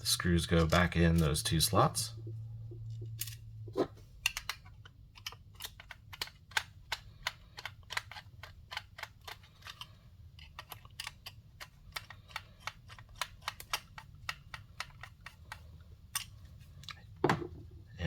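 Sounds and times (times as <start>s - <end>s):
screwdriver clicking into plastic: 4.2s - 16.3s.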